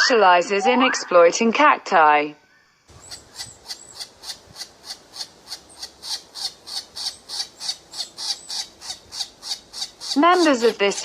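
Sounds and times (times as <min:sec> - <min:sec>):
woodpecker calling harsh notes: 0:02.4 - 0:11.0.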